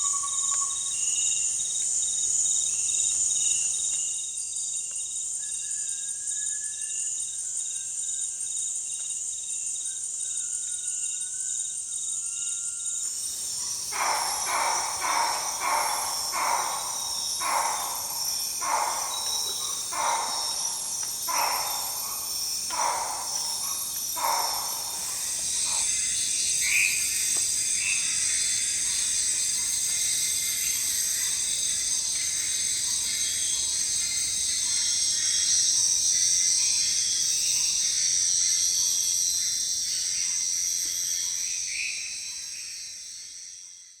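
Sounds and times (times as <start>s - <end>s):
high-pitched insect chorus: 0.0s - 44.0s
bird calling: 13.6s - 25.9s.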